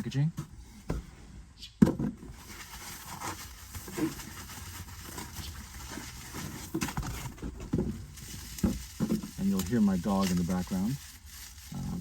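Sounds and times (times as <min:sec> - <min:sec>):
cardboard box handled: 0:02.3 - 0:09.6
light knocks and rustles: 0:05.8 - 0:10.4.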